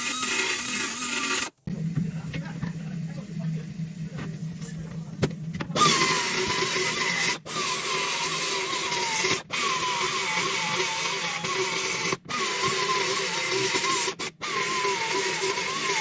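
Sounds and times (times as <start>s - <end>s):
power tool grinding: 0.0s - 2.5s, 5.7s - 16.0s.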